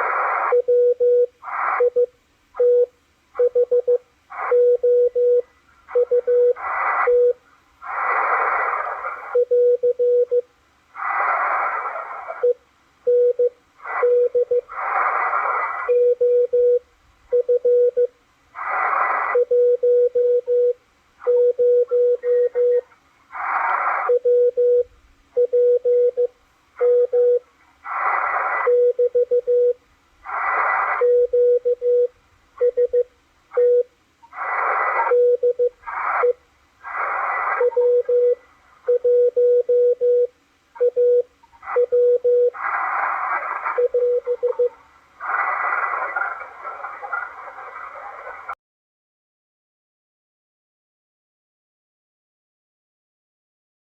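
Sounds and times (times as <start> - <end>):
morse code tone: 0.0 - 7.4, 8.1 - 10.4, 12.3 - 18.1, 19.3 - 22.9, 24.0 - 27.5, 28.4 - 29.8, 30.5 - 33.9, 34.5 - 36.4, 37.0 - 47.0
radio static hiss: 0.0 - 17.4, 18.0 - 20.3, 21.1 - 40.0, 40.6 - 48.6.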